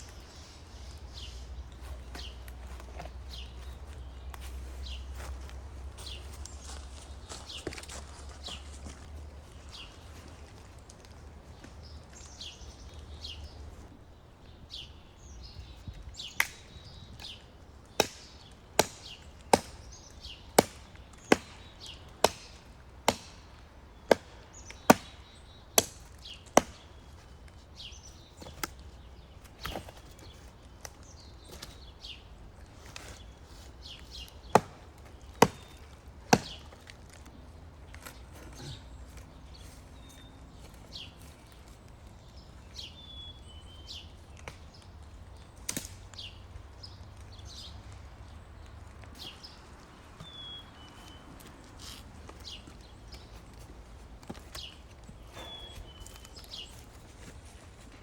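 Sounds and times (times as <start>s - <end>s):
wood being chopped: 16.3s - 27.0s, 28.4s - 28.8s, 29.4s - 31.9s, 33.8s - 37.3s, 45.6s - 46.4s, 52.4s - 57.4s.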